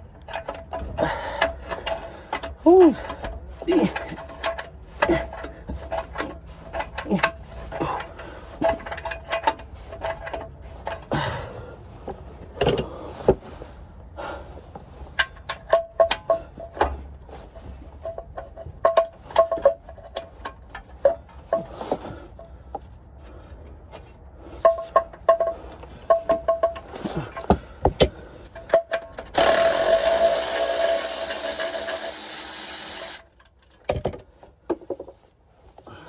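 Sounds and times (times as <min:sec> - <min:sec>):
ratchet wrench clicking: 0:29.3 - 0:33.3.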